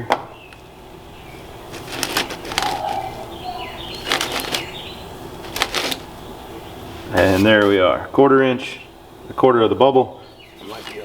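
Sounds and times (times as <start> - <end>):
gravel scraping: 1.7 - 6.3, 6.9 - 7.9, 10.6 - 11.0.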